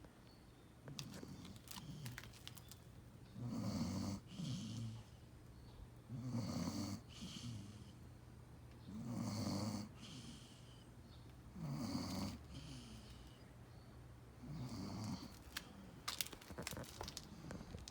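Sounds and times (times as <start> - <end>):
dog snoring: 3.4 - 5.2, 6.1 - 8.0, 8.9 - 10.8, 11.5 - 13.4, 14.4 - 15.4.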